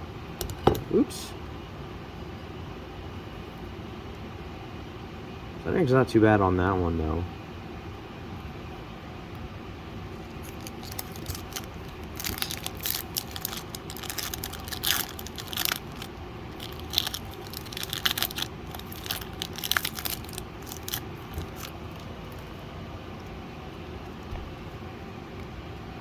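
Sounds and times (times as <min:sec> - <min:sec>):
steady low hum: 0:00.0 - 0:26.0
foil wrapper crinkling and tearing: 0:10.1 - 0:22.6.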